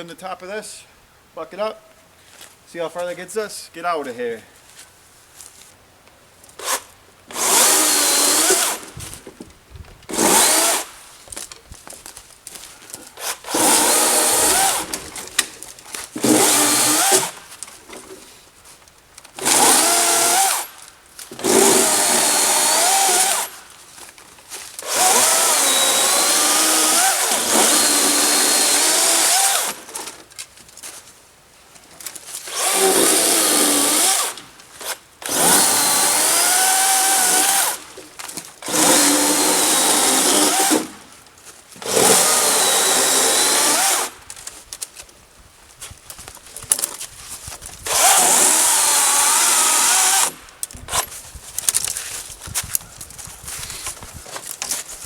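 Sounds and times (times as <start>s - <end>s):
electric chainsaw cutting wood: 6.6s - 9.0s, 10.1s - 10.9s, 13.2s - 15.1s, 16.2s - 17.4s, 19.4s - 20.8s, 21.4s - 23.6s, 24.8s - 30.2s, 32.4s - 38.0s, 38.6s - 41.1s, 41.8s - 44.2s, 47.9s - 51.1s.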